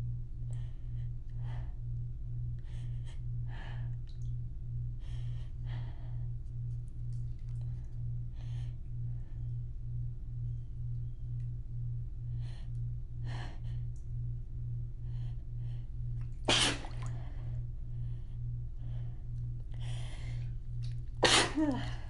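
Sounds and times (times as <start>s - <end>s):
low pulsing hum: 0.0s - 22.0s
woman sneezing: 16.5s - 16.9s, 21.2s - 21.9s.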